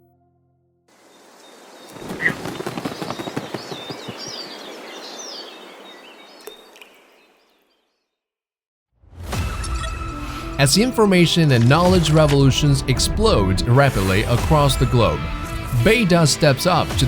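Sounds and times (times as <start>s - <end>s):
birds chirping: 1.0s - 8.1s.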